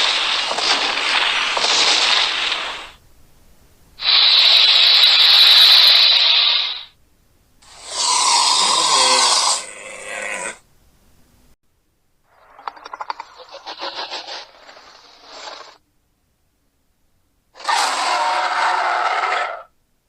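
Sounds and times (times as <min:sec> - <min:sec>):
high hissing creature call: 0:04.0 - 0:07.0, 0:07.6 - 0:10.6, 0:17.6 - 0:19.7
low growling creature call: 0:07.7 - 0:10.6, 0:17.6 - 0:19.7.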